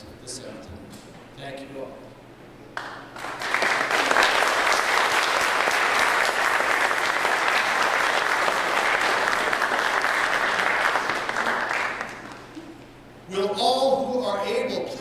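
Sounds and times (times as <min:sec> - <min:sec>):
congregation applauding: 0:02.8 - 0:12.6.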